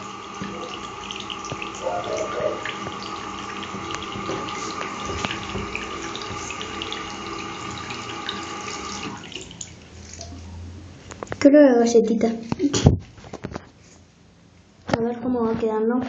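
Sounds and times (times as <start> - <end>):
water running from tap: 0.0 - 10.6
small clicks and rustles: 11.0 - 14.0.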